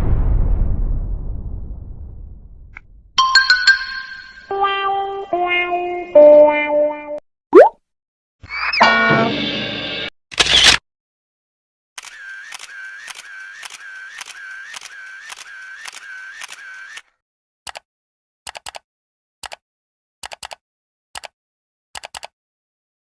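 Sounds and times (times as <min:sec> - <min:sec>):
short mechanical clicks: 0:12.0 - 0:17.0.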